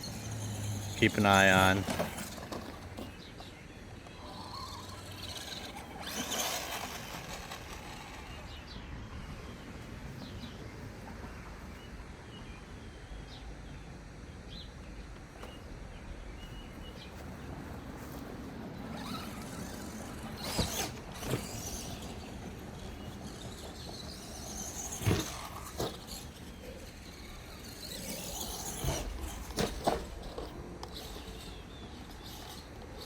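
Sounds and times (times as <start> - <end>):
faint bird chirps: 3.0 - 18.3.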